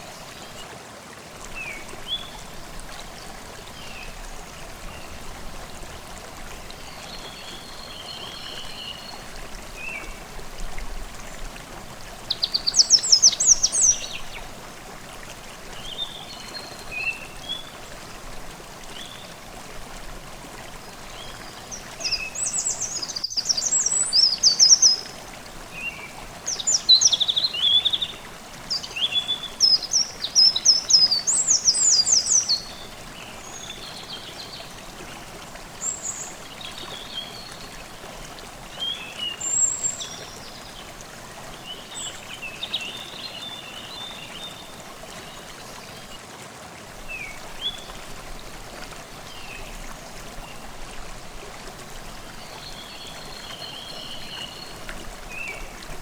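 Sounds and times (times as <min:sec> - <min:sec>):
stream babbling: 0:00.0 - 0:56.0
songbirds singing: 0:12.1 - 0:14.6, 0:20.9 - 0:35.2, 0:35.8 - 0:38.0, 0:38.7 - 0:46.2, 0:52.0 - 0:56.0.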